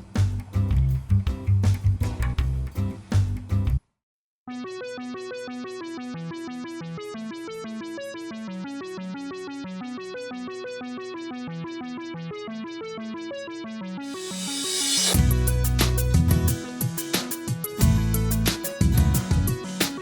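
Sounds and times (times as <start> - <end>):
electronic keyboard tune: 4.5 - 20.0
rising hiss: 14.2 - 15.2.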